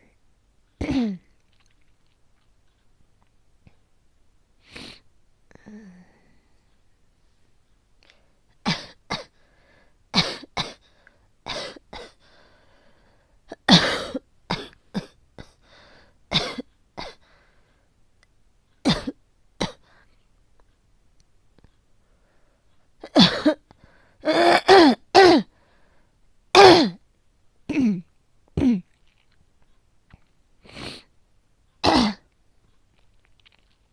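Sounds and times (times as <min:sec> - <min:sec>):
woman coughing: 0:00.8 - 0:01.2, 0:08.7 - 0:09.3, 0:10.2 - 0:10.8, 0:11.5 - 0:12.2, 0:13.6 - 0:15.2, 0:16.3 - 0:17.2, 0:18.9 - 0:19.8, 0:23.0 - 0:23.6, 0:24.3 - 0:25.5, 0:26.6 - 0:27.0, 0:31.8 - 0:32.2.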